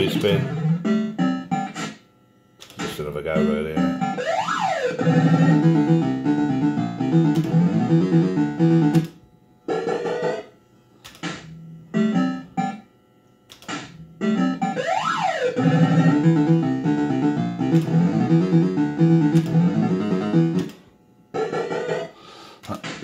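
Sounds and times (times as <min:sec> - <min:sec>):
swooping electronic tone: 0:03.4 - 0:08.9, 0:14.2 - 0:20.6.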